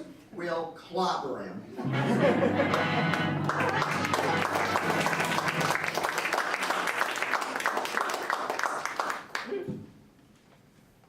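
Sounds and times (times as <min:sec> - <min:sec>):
audience applauding: 0:01.9 - 0:09.7.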